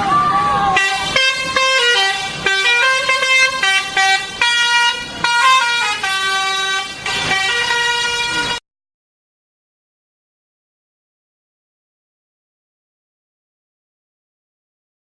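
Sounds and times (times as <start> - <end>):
bus musical horn playing a tune: 0.6 - 8.6.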